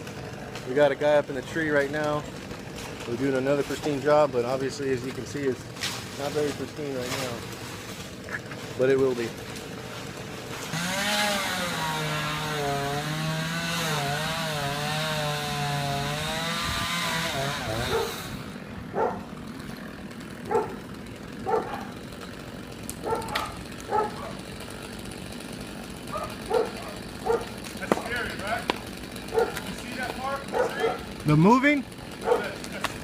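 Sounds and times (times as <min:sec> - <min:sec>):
chainsaw cutting: 0:00.0 - 0:33.0
dog barking: 0:17.9 - 0:18.2, 0:18.9 - 0:19.3, 0:20.5 - 0:20.8, 0:21.4 - 0:22.0, 0:23.0 - 0:24.4, 0:26.1 - 0:27.5, 0:29.3 - 0:29.6, 0:30.5 - 0:31.1, 0:32.2 - 0:32.5.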